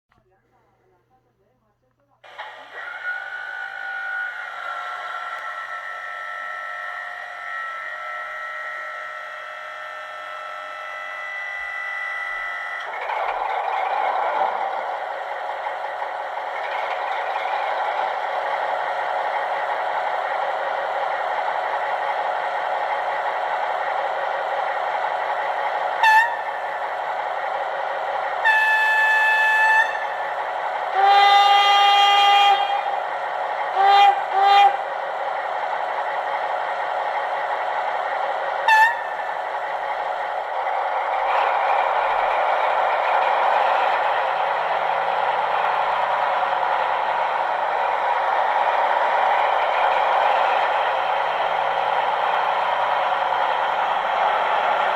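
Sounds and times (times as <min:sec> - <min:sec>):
diesel locomotive engine running: 0:02.2 - 0:54.9
locomotive horn blasts: 0:26.0 - 0:26.6, 0:28.4 - 0:30.1, 0:30.9 - 0:32.9, 0:33.7 - 0:34.8, 0:38.7 - 0:39.2.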